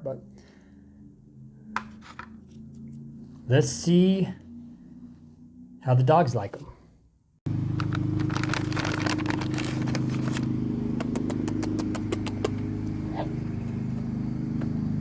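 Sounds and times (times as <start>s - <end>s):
vehicle engine idling: 7.5s - 15.0s
sharp crunching clicks: 7.7s - 12.7s.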